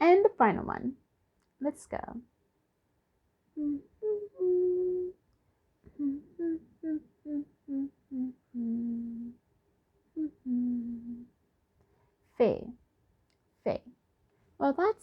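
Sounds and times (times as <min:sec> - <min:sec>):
person humming a tune: 0:03.6 - 0:05.2, 0:05.9 - 0:09.4, 0:10.2 - 0:11.3.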